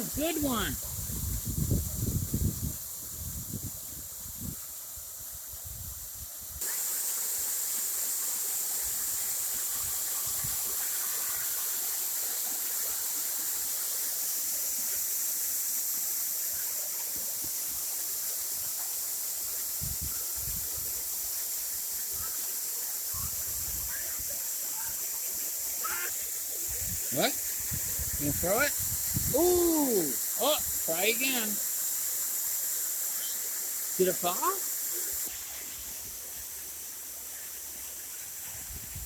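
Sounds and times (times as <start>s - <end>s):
waterfall rushing: 23.1s - 35.4s.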